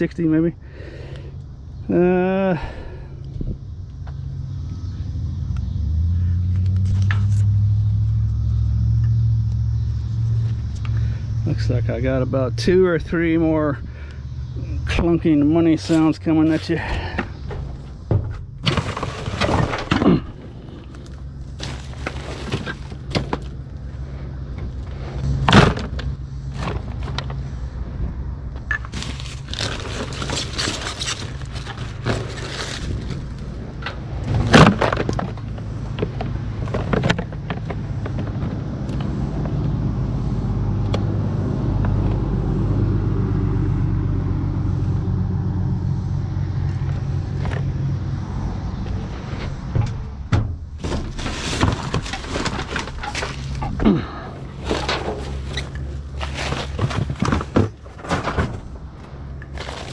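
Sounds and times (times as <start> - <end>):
engine running: 0.5 - 59.9
scrap metal clunking and clattering: 16.8 - 23.7, 49.3 - 59.9.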